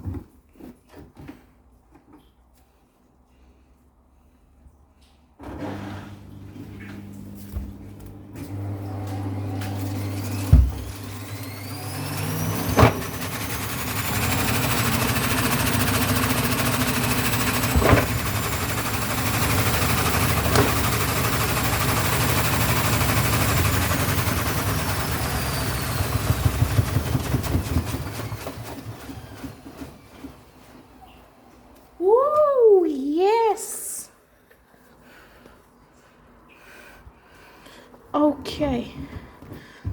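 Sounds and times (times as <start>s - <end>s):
washing machine motor whine: 5.4s - 30.4s.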